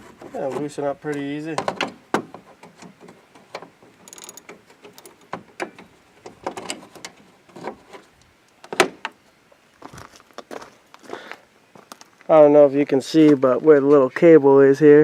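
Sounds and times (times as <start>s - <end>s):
hand tools clicking on metal: 2.6s - 7.2s.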